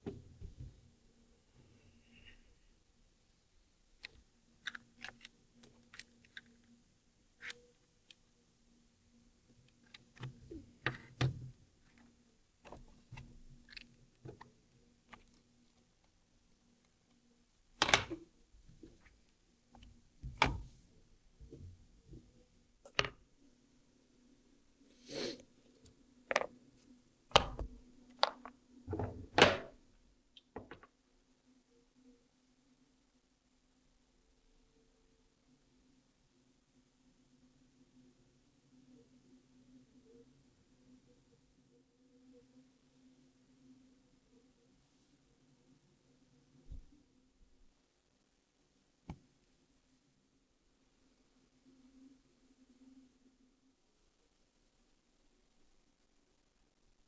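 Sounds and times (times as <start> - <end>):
faint steady hum: 0.0 - 57.0
small clicks and light knocks: 4.0 - 6.8.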